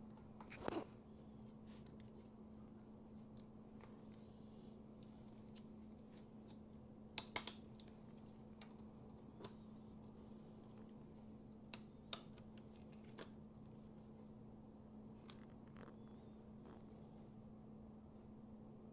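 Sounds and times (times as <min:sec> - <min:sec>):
clicks of laptop parts: 0:07.2 - 0:08.0.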